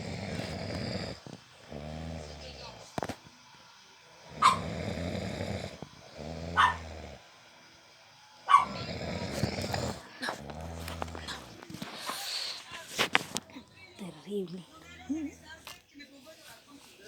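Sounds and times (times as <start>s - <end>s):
man snoring heavily: 0.0s - 2.8s, 4.2s - 7.4s, 8.6s - 12.2s.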